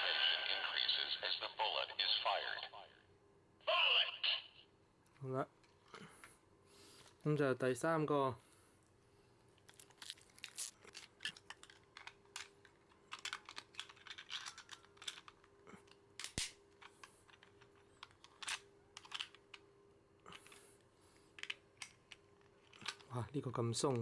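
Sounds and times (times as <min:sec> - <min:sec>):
plastic parts clicking together: 0:09.6 - 0:19.7, 0:21.3 - 0:23.2.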